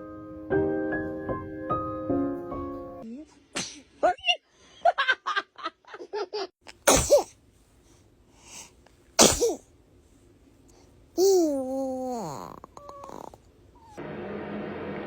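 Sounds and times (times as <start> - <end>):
girl sneezing: 3.5 - 3.9, 6.9 - 7.3, 9.2 - 9.6.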